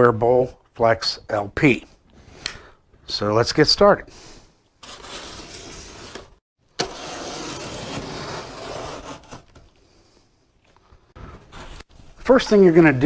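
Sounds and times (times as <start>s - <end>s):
cardboard scraping and rustling: 4.8s - 9.7s.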